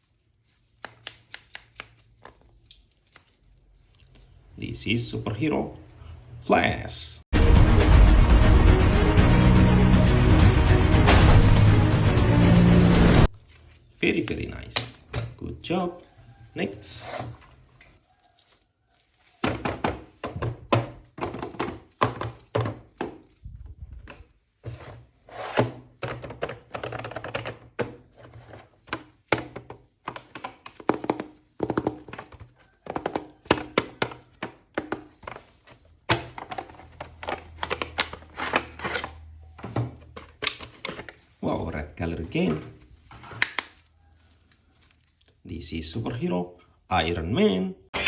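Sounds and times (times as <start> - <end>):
plastic toy and packaging clatter: 13.4 - 45.4.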